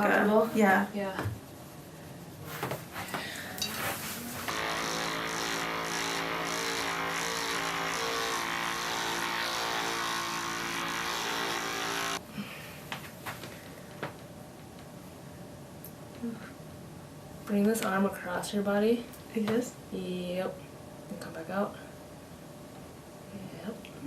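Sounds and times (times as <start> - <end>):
massage gun motor buzzing: 4.5 - 12.2.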